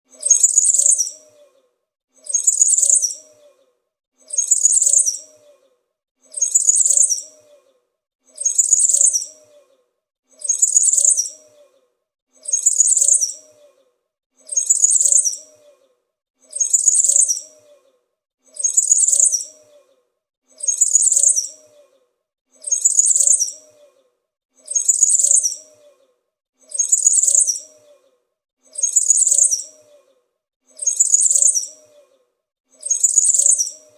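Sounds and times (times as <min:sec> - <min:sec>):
songbird chirping warble: 0:00.2 - 0:01.6, 0:02.3 - 0:03.7, 0:04.4 - 0:05.7, 0:06.4 - 0:07.8, 0:08.4 - 0:09.8, 0:10.5 - 0:11.9, 0:12.5 - 0:13.9, 0:16.6 - 0:18.0, 0:18.6 - 0:20.0, 0:20.7 - 0:22.0, 0:22.7 - 0:23.9, 0:24.7 - 0:26.1, 0:26.8 - 0:28.2, 0:28.8 - 0:30.1, 0:30.8 - 0:32.1, 0:32.9 - 0:33.9.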